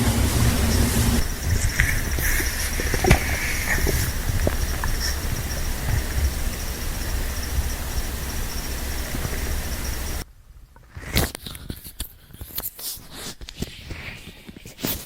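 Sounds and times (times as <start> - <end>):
steady low noise: 0.0 - 10.2
stomach gurgles: 1.2 - 10.2.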